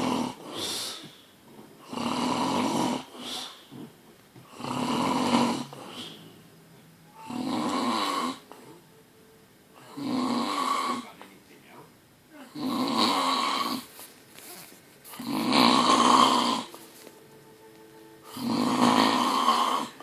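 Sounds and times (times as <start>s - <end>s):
person snoring loudly: 1.8s - 3.8s, 4.5s - 6.4s, 7.1s - 8.8s, 9.8s - 11.1s, 12.4s - 13.9s, 15.1s - 16.8s, 18.2s - 20.0s.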